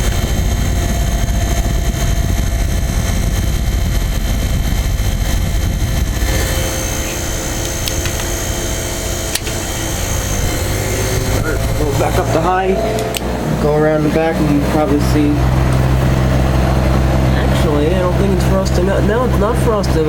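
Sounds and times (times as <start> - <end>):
dehumidifier humming: 0.0 - 20.0
sharp click: 7.6 - 8.3.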